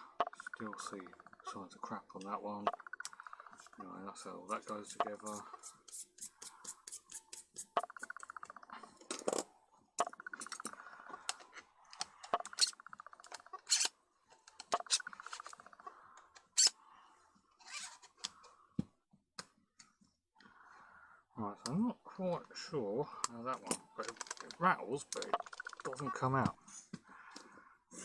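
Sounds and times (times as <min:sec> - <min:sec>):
fine rasp of turning part: 0:04.5 - 0:07.8, 0:13.7 - 0:13.9
clicks and taps of metal and glass: 0:06.2 - 0:11.4, 0:23.2 - 0:26.0.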